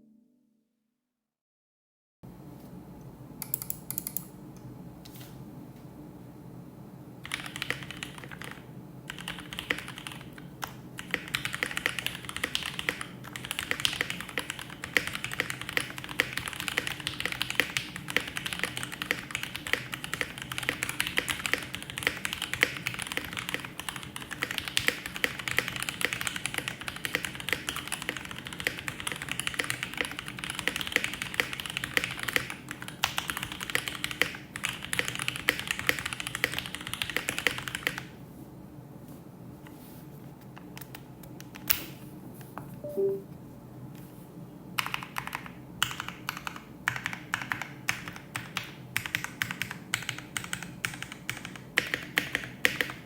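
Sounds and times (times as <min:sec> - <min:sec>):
mechanical keyboard typing: 0:03.4 - 0:04.3, 0:07.2 - 0:38.1, 0:44.8 - 0:53.0.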